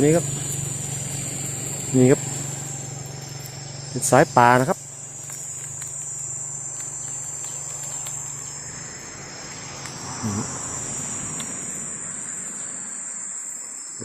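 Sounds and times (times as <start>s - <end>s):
insects droning: 0.0s - 14.0s
short low call: 10.1s - 10.6s.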